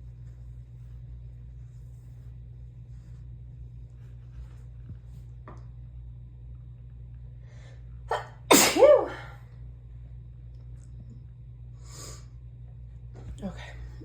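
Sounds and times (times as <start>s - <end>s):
woman sneezing: 8.1s - 9.4s.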